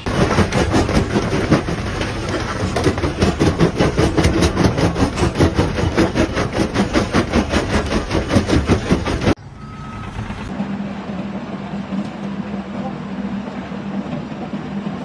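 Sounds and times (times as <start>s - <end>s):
machine clattering rhythmically: 0.0s - 9.4s.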